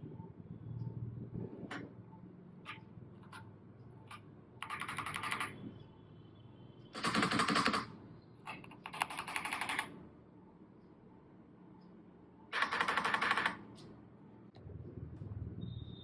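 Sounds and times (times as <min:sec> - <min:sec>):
rapid keystrokes on keyboard: 0:04.1 - 0:05.6, 0:07.0 - 0:10.0, 0:12.5 - 0:13.9.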